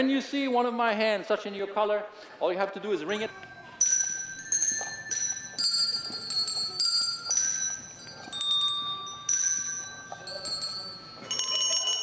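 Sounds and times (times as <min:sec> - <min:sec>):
tuned bells ringing a tune: 0:03.1 - 0:12.0.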